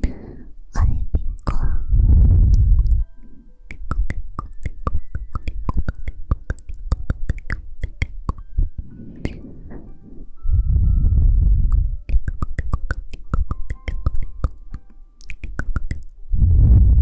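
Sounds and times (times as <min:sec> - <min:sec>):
sharp clicks and taps: 0:03.7 - 0:08.5, 0:11.6 - 0:16.2.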